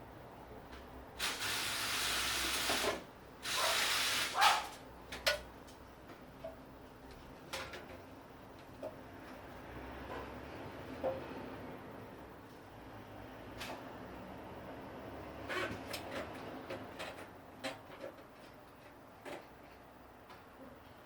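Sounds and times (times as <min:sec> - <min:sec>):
hissing gas spray: 0:01.2 - 0:04.7.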